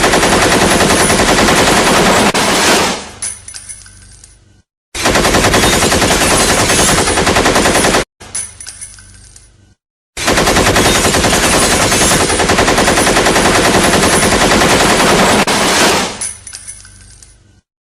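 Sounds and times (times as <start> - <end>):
assault rifle automatic fire: 0.0 - 3.0, 5.0 - 8.1, 10.2 - 16.2
light metallic clinks: 3.2 - 4.6, 8.2 - 9.7, 16.2 - 17.6.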